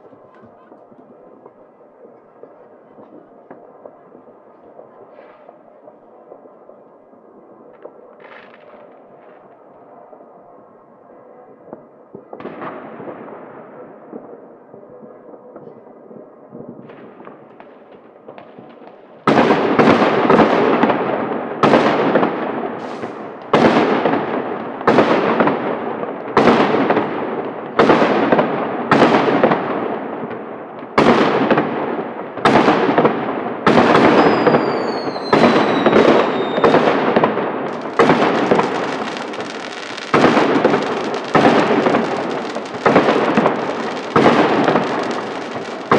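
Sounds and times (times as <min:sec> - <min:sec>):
distant fireworks crackling: 0:00.0 - 0:45.9
loud echoing firework bangs: 0:16.9 - 0:45.9
falling firework whistle: 0:34.0 - 0:36.9.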